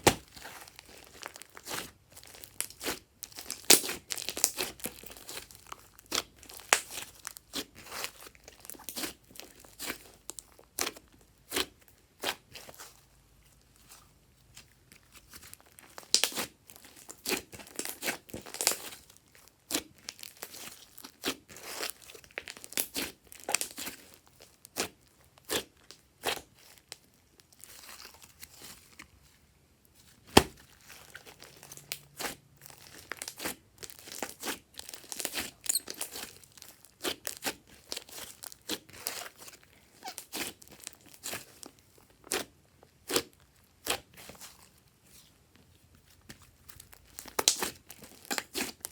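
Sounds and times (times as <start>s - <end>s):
slime clicking and popping: 47.2s - 48.6s.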